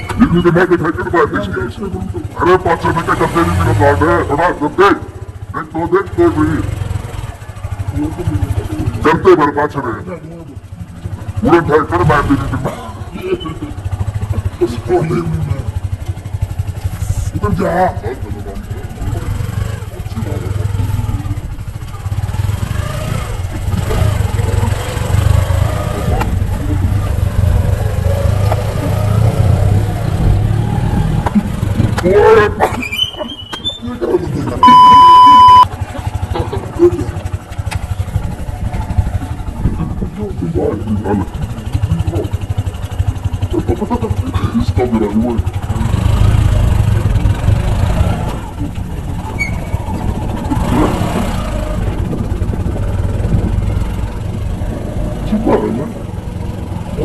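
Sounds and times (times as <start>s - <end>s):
motorcycle engine rumbling: 0.0s - 57.0s.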